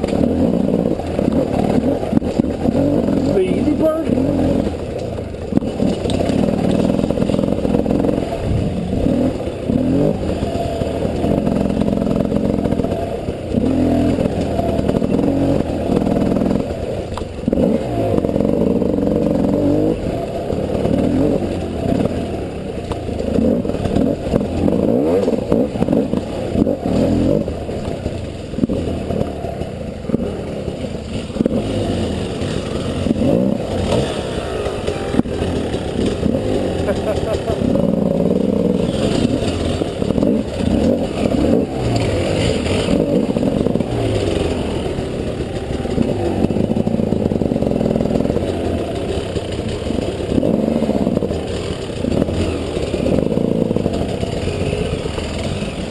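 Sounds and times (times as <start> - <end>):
bike clattering and scraping: 0.0 - 55.9
motorcycle engine revving: 0.0 - 55.9.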